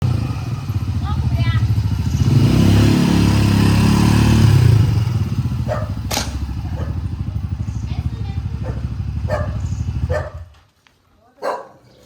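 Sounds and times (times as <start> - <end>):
small engine revving and idling: 0.0 - 10.5
sharp click: 6.1 - 6.4.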